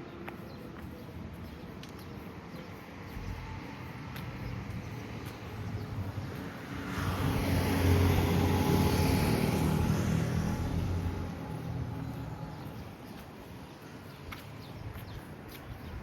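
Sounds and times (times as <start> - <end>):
car driving past: 6.8 - 12.6.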